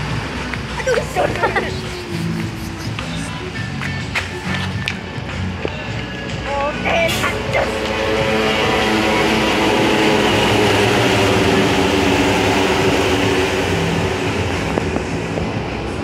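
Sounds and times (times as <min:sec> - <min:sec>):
bus engine noise: 0:00.0 - 0:16.0
bus horn playing tones: 0:07.0 - 0:14.5.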